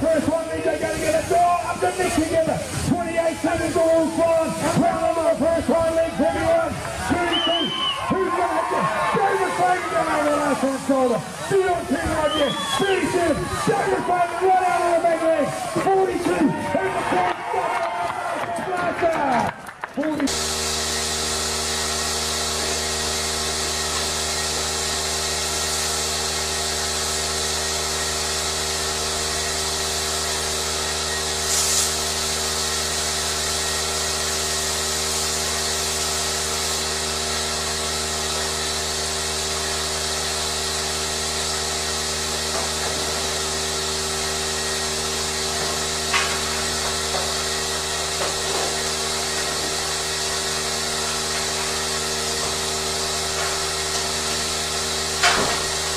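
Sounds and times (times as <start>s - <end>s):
hissing burst: 0.0s - 16.9s, 20.2s - 55.9s
machinery hum and hiss: 0.0s - 18.4s, 20.0s - 55.9s.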